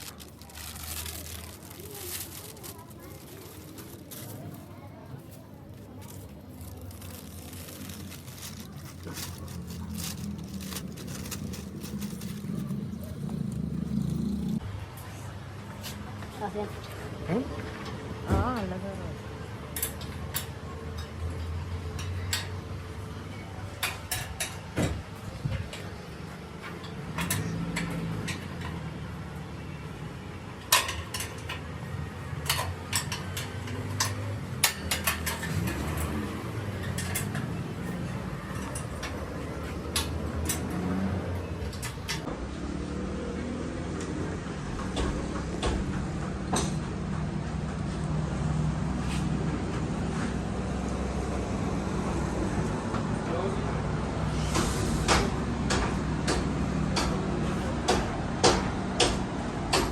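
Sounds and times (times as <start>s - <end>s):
metal tools clinking: 5.8s - 14.6s.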